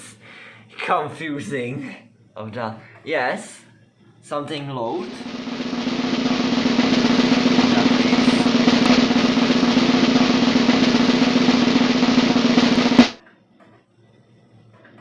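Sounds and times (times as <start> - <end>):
floppy disk drive buzzing rattle: 5.2 - 13.2.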